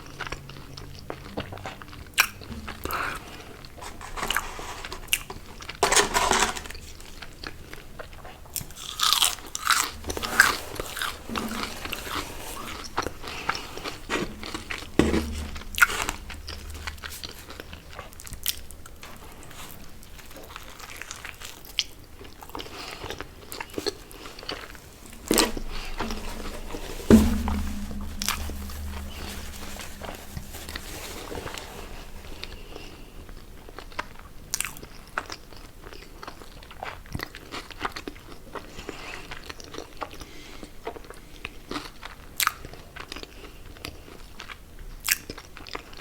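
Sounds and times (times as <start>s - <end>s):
crunchy food chewing: 8.2s - 11.1s.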